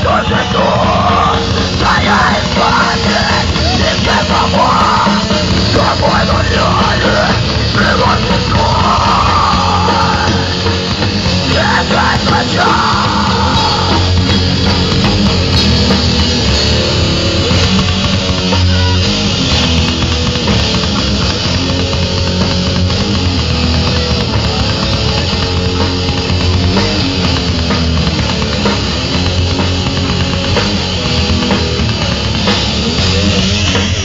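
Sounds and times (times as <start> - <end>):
heavy rock music: 0.0 - 34.0.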